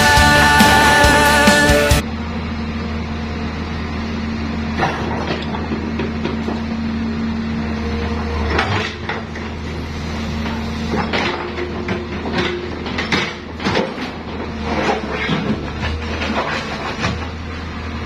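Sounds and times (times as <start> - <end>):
excavator engine running: 0.0 - 18.0
metallic clanks and knocks: 10.4 - 17.3.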